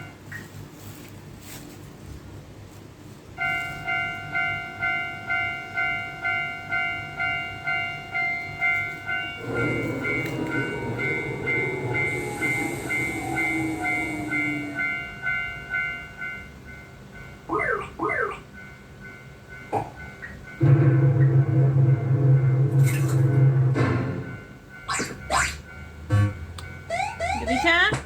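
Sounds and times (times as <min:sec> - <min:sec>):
railroad crossing bell dinging: 0:00.0 - 0:00.4, 0:03.4 - 0:28.0
train rumbling past: 0:00.0 - 0:28.0
train horn: 0:09.4 - 0:15.0.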